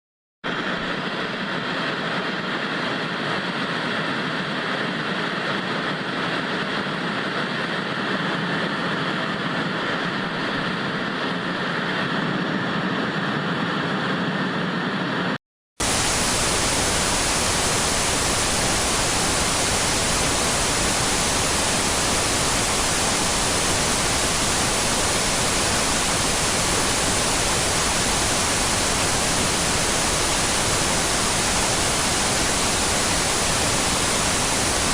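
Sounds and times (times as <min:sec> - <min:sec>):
tv static hiss: 0:15.8 - 0:34.9.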